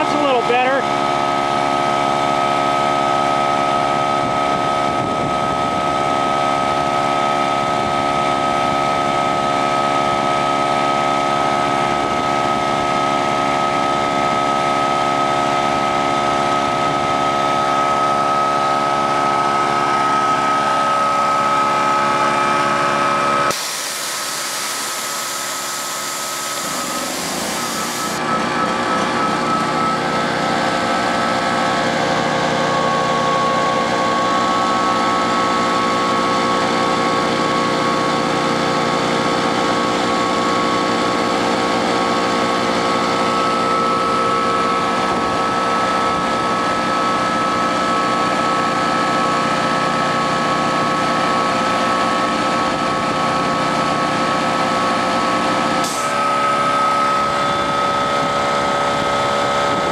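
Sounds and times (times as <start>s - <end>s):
air compressor running: 0.0s - 59.9s
gasoline generator running: 0.0s - 59.9s
loud hiss: 23.5s - 28.2s.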